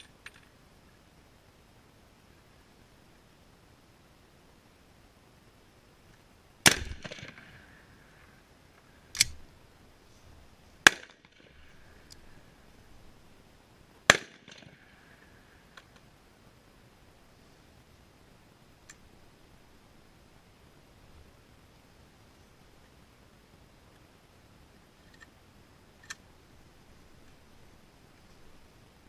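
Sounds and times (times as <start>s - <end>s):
suppressed rifle shots echoing: 6.6s - 8.3s, 10.8s - 12.5s, 14.0s - 15.8s.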